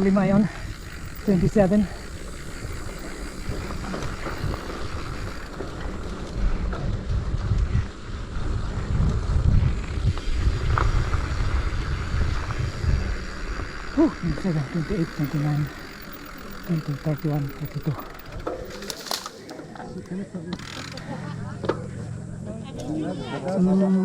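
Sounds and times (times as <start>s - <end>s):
wind buffeting microphone: 0.0s - 18.7s
bike rolling on dirt trail: 0.0s - 23.9s.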